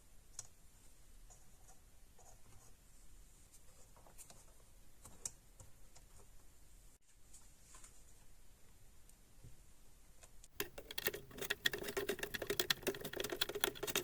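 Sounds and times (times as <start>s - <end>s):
small parts clicking and tapping: 10.6s - 14.0s.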